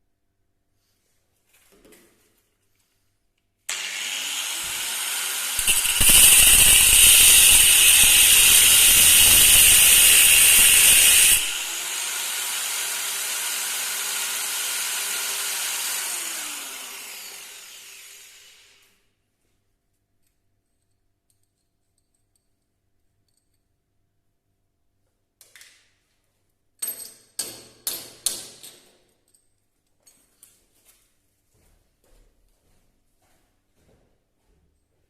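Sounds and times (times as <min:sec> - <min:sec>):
power tool grinding metal: 0:03.7 - 0:18.8.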